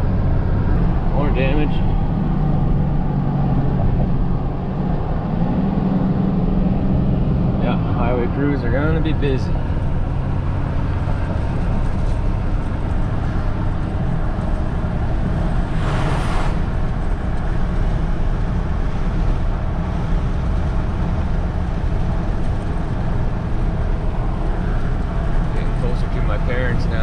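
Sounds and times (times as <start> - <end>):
diesel engine drone: 0.0 - 27.0
tyre and road noise: 0.0 - 27.0
brief whoosh: 15.5 - 17.1.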